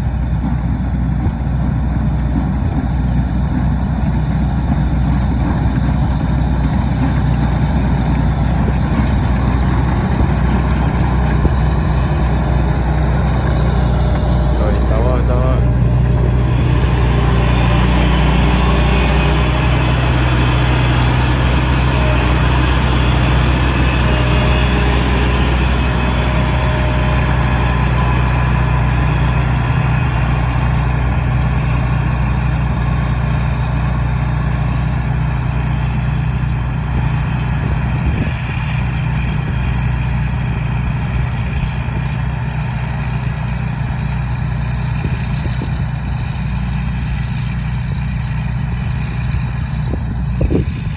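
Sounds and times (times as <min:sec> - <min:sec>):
combine harvester engine humming: 0:00.0 - 0:50.9.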